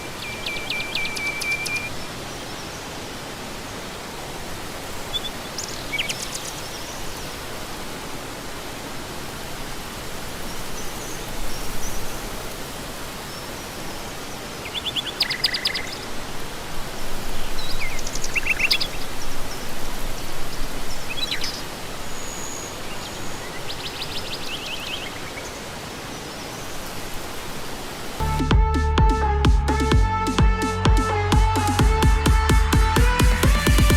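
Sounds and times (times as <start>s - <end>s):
birds chirping: 0.0s - 2.9s
steady outdoor hiss: 0.0s - 28.5s
music: 28.2s - 33.9s.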